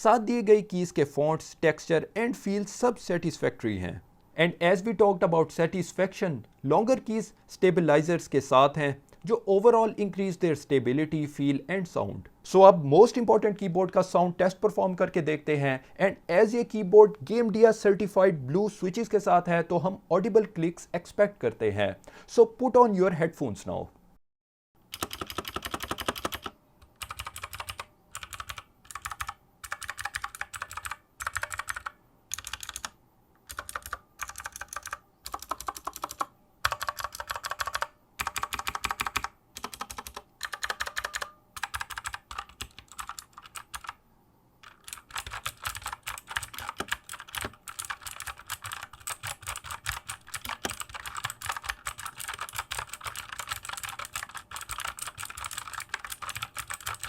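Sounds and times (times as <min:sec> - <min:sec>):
clicky mechanical keyboard typing: 0:24.9 - 0:44.0, 0:44.6 - 0:57.0.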